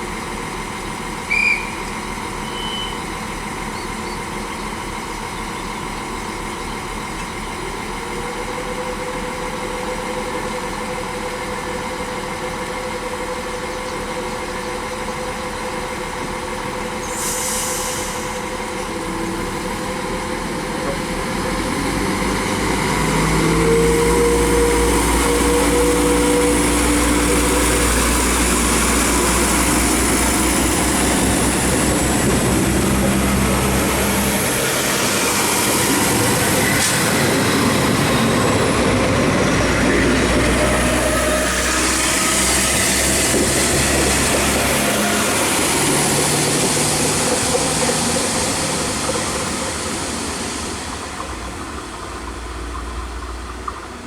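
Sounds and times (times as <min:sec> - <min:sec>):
diesel train engine running: 0:00.0 - 0:54.0
compressed air hiss: 0:17.0 - 0:18.4.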